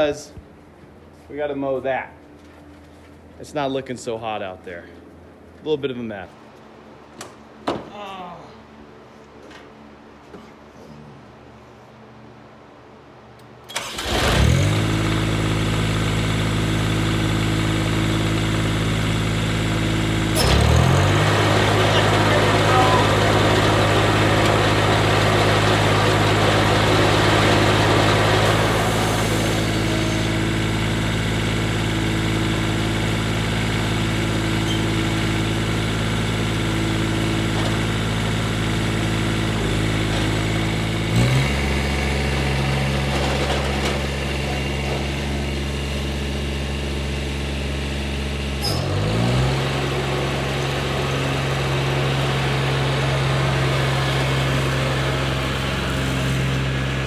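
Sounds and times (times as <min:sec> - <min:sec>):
garden tractor engine running: 0:13.4 - 0:57.0.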